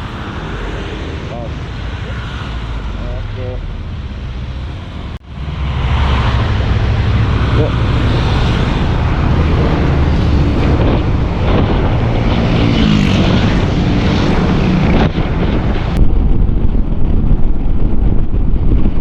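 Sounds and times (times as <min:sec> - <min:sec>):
scooter engine: 0:00.0 - 0:14.8
wind rushing over microphone: 0:00.0 - 0:19.0.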